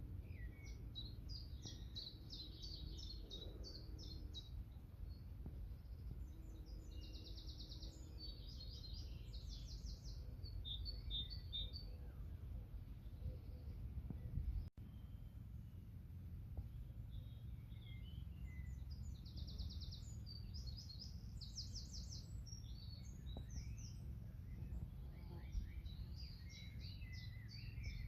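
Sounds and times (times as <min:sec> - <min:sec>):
songbird singing: 0:00.0 - 0:28.0
steady low rumble: 0:11.9 - 0:28.0.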